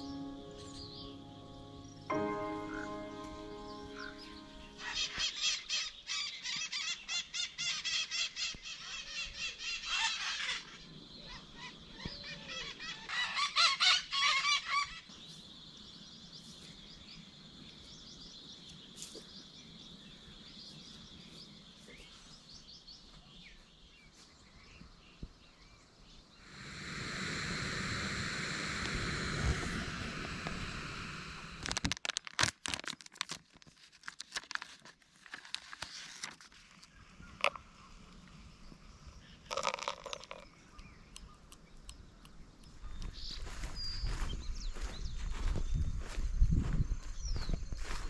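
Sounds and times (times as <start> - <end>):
faint steady high tone: 0.0 - 5.0
birds calling: 0.0 - 15.4, 36.9 - 48.0
even rushing noise: 26.5 - 31.7.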